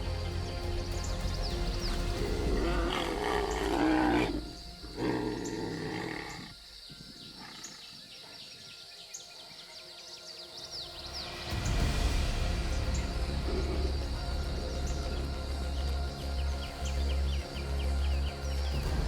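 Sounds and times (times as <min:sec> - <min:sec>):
background music: 0:00.0 - 0:19.0
tigers snarling and roaring: 0:02.0 - 0:08.0, 0:13.0 - 0:16.6.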